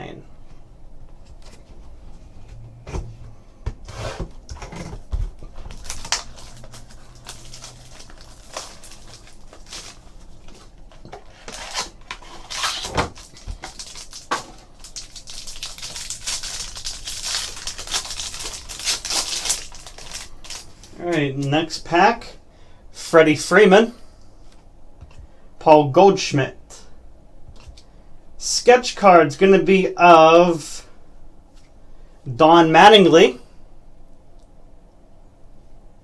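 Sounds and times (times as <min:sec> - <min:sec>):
wrapper rustling and crinkling: 0:05.4 - 0:21.5.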